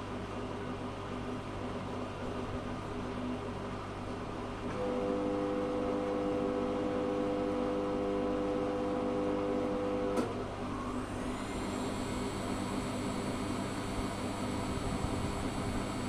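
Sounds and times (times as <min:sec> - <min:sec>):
washing machine hum: 0:00.0 - 0:16.0
high motor whine: 0:10.9 - 0:16.0.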